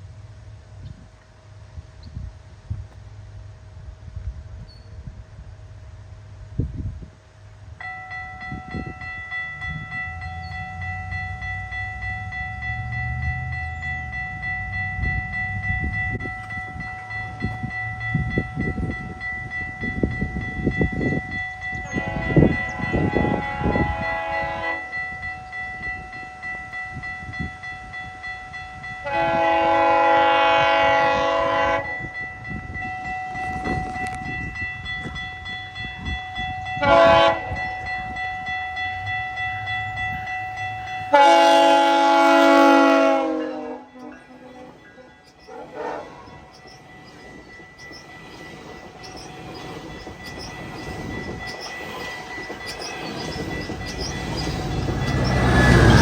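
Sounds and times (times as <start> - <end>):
train horn blasts: 21.8 - 25.1, 28.8 - 32.2, 36.7 - 37.8, 40.8 - 46.6
steady high ringing tone: 43.8 - 56.0.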